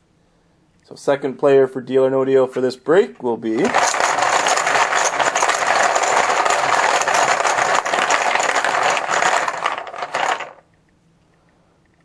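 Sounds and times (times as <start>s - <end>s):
small hard objects rattling: 3.5s - 10.6s.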